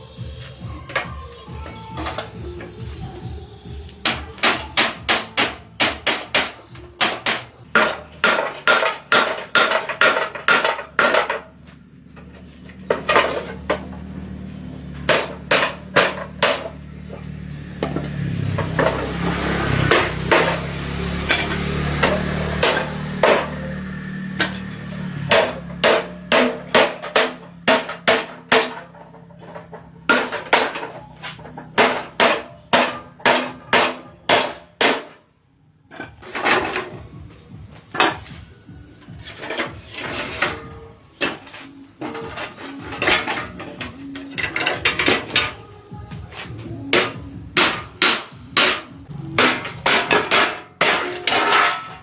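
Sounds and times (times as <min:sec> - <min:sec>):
hammer striking metal: 0:46.9 - 0:52.0.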